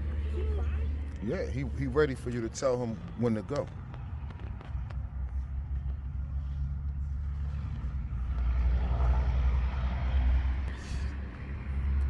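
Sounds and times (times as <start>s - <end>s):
low vehicle rumble: 0.0s - 12.0s.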